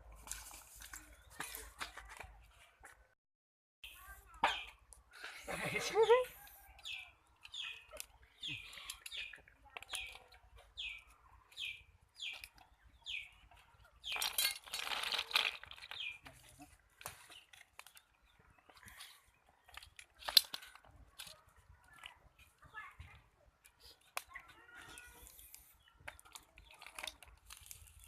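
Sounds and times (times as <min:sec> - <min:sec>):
small bird chirping: 0:06.4 - 0:14.6, 0:15.6 - 0:20.4.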